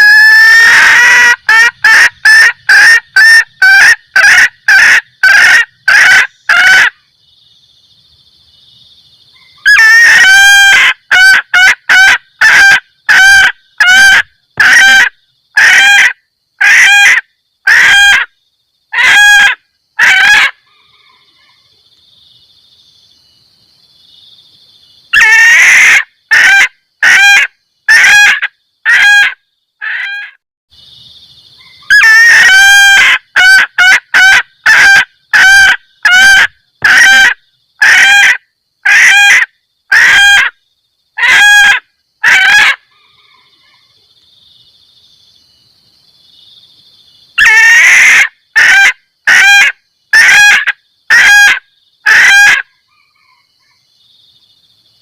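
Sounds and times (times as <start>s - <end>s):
hen cackling: 0.0s - 7.0s, 9.4s - 18.3s, 18.9s - 21.7s, 25.1s - 30.4s, 31.6s - 40.6s, 41.2s - 43.9s, 47.4s - 53.8s.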